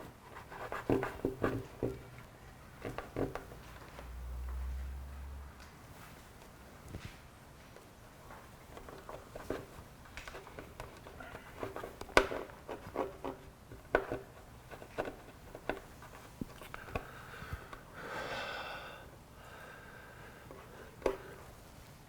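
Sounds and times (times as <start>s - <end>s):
hands tapping and rubbing: 0.0s - 4.1s, 8.3s - 17.1s.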